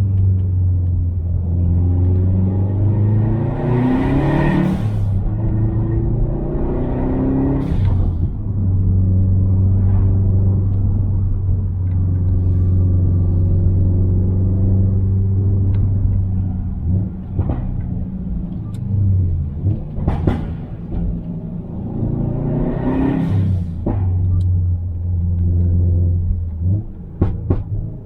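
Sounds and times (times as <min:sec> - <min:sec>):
car engine revving: 0:00.0 - 0:28.0
sharp exhaust pops: 0:19.6 - 0:21.3, 0:26.4 - 0:27.9.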